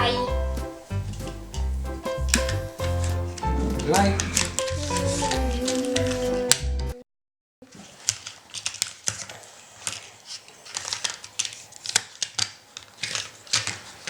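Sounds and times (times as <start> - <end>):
background music: 0.0 - 7.0
plastic toys clattering: 2.2 - 6.6, 7.7 - 14.0.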